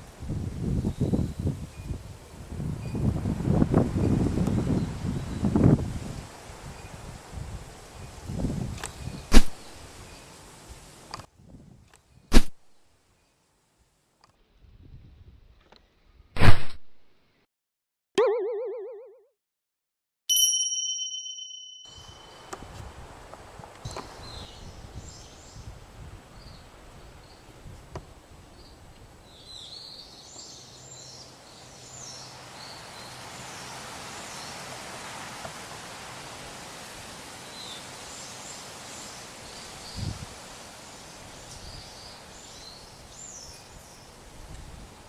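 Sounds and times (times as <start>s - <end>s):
short high chirps: 18.2s - 19.2s, 20.3s - 22.5s
bright ding: 20.3s - 22.5s.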